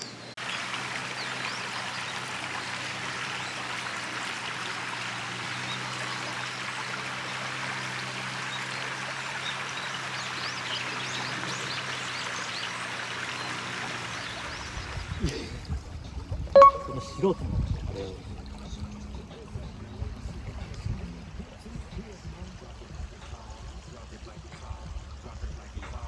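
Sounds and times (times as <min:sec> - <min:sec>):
small birds chirping: 0:00.0 - 0:15.5
river water flowing: 0:00.0 - 0:26.0.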